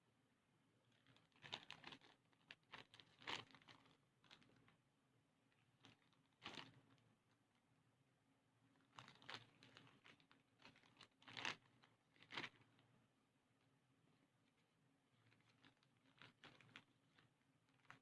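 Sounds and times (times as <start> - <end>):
faint crinkling and rustling: 0.8 - 7.7, 8.6 - 18.0.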